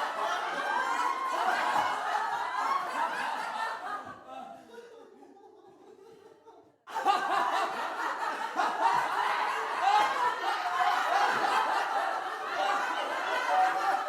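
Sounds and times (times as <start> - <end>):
group of people laughing: 0.0 - 14.0.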